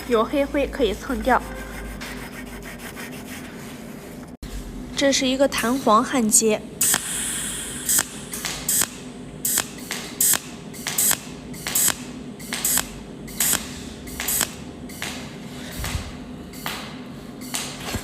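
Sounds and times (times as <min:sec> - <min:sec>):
long welding hiss: 0:06.8 - 0:10.4
welding arc pulses zapping: 0:06.8 - 0:15.1.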